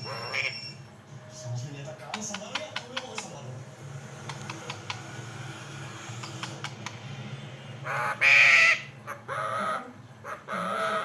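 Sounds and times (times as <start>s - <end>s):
parrot squawking: 0.0s - 0.9s, 7.8s - 11.0s.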